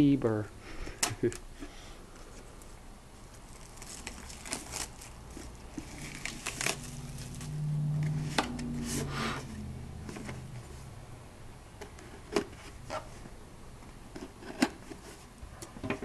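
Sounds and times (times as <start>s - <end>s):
packaging crinkling: 2.6s - 7.6s
low hum: 5.7s - 11.9s.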